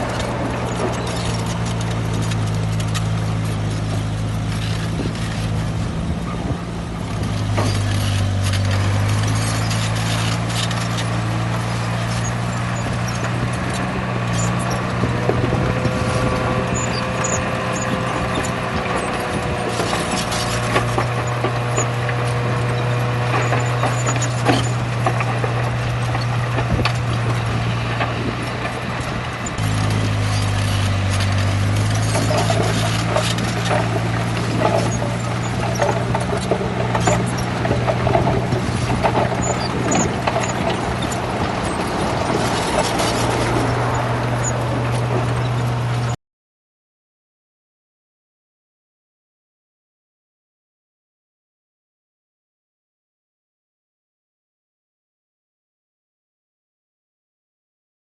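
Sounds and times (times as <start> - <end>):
held squeal: 0.0 - 2.0, 11.8 - 15.2, 15.8 - 27.4, 29.4 - 46.2
bulldozer diesel engine running: 0.0 - 46.2.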